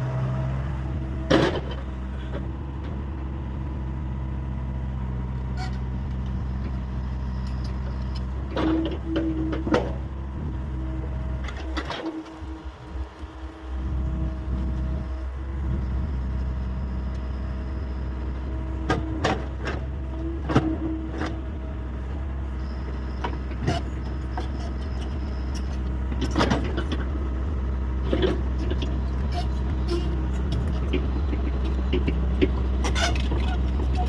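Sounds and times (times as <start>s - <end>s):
excavator diesel engine running: 0.0s - 34.0s
excavator bucket clanking: 1.2s - 1.9s, 8.2s - 10.0s, 26.1s - 27.1s, 28.0s - 34.0s.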